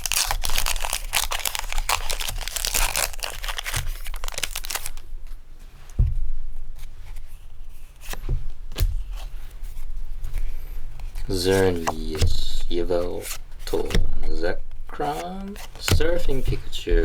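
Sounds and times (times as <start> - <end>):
foil wrapper crinkling and tearing: 0.0 - 5.1
soft thump: 5.9 - 6.4.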